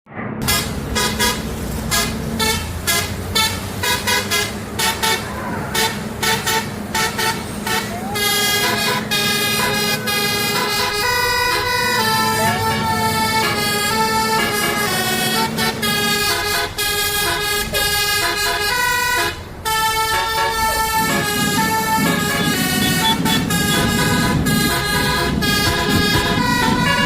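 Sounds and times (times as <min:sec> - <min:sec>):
musical bus horn playing a tune: 0:00.4 - 0:27.0.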